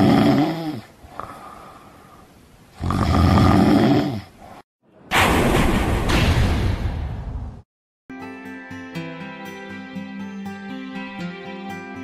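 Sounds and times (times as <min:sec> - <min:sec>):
person snoring loudly: 0:00.0 - 0:01.7, 0:02.8 - 0:04.4
quiet breathing: 0:00.6 - 0:02.6.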